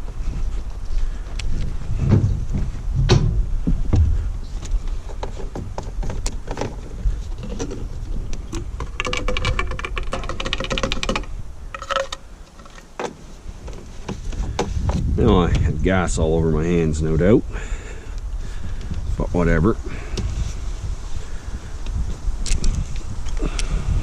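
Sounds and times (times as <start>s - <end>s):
rattle: 8.5s - 12.9s.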